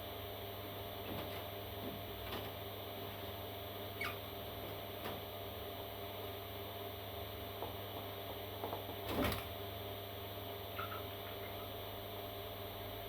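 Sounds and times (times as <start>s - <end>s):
steady low hum: 0.0s - 13.0s
parrot chick squeaking: 4.0s - 4.3s, 10.8s - 11.7s.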